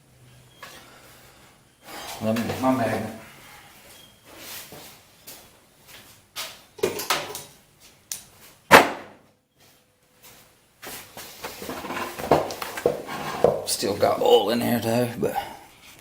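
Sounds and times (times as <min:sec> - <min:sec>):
sharp loud knock: 0:08.7 - 0:09.2.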